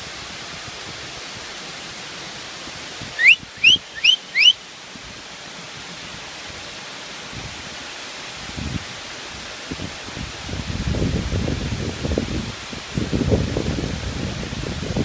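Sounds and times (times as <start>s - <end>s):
waterfall rushing: 0.0s - 15.0s
bird whistling rising notes: 3.2s - 4.6s.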